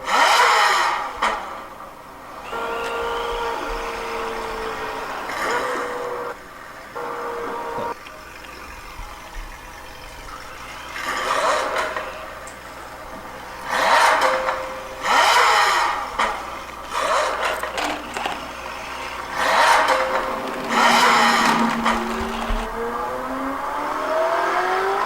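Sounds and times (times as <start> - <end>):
sports car engine revving: 11.0 - 25.0.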